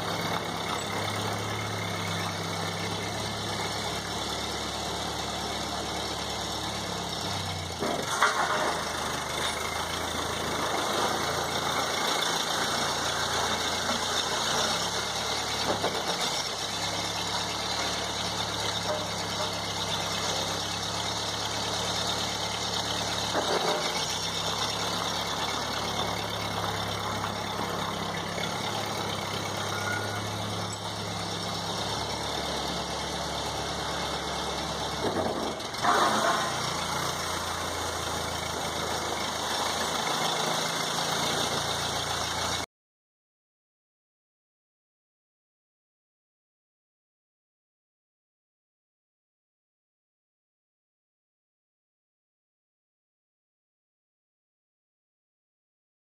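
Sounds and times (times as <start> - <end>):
tractor engine running: 0.0 - 42.7.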